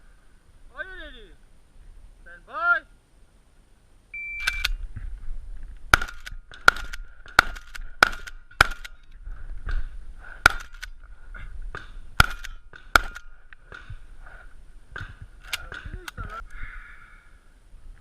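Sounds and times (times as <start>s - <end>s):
shot timer beep: 4.2s - 4.8s
gunshots in quick succession: 5.9s - 8.9s.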